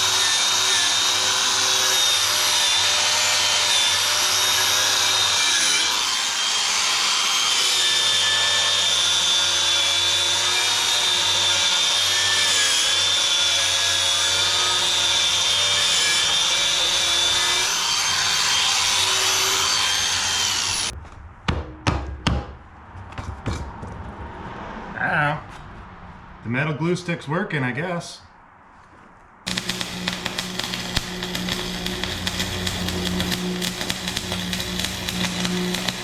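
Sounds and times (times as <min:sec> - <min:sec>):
sharp knocks: 0:21.0 - 0:24.0
low hum: 0:29.5 - 0:36.0
welding arc crackling: 0:29.5 - 0:36.0.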